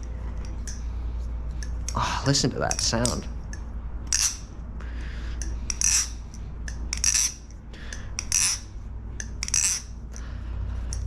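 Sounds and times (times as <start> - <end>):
butterfly knife metallic clacks: 2.6 - 4.5, 5.4 - 7.6.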